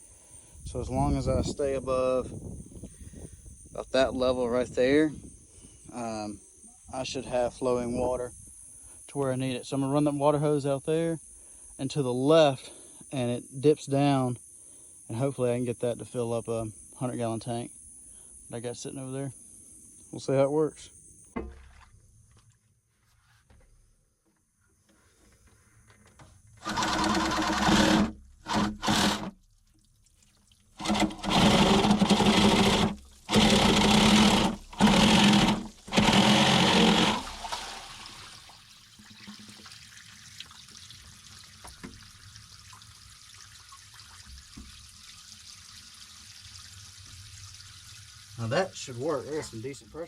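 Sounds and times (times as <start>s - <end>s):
water gushing from a hose: 26.6s - 50.0s.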